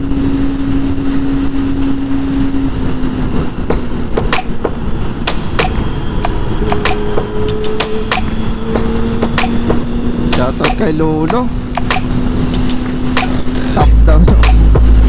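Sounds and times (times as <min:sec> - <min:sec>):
motorcycle engine cruising: 0:00.0 - 0:15.0
wind rumble on microphone: 0:00.0 - 0:15.0
sharp clicks: 0:03.7 - 0:13.7.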